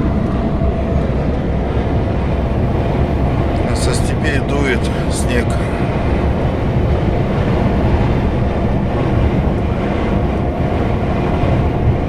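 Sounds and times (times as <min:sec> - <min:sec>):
road noise: 0:00.0 - 0:12.0
truck diesel engine rumble: 0:00.0 - 0:12.0.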